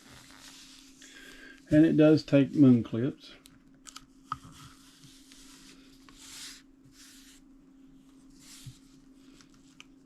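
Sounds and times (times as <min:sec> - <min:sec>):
low electrical hum: 0:00.0 - 0:10.0
soft rubbing swishes: 0:04.6 - 0:09.5.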